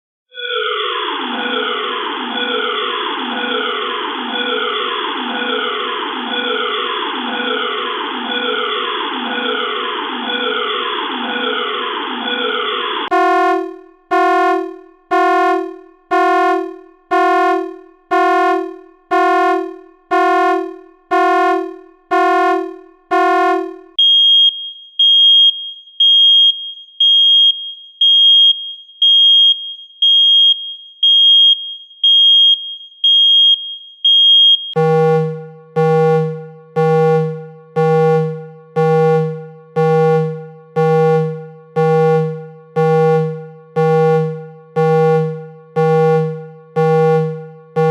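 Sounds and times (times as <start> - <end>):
buzzy alarm beeps: 13.1 - 24.2, 33.1 - 47.9
high piercing alarm beep: 13.1 - 24.3, 29.1 - 47.9.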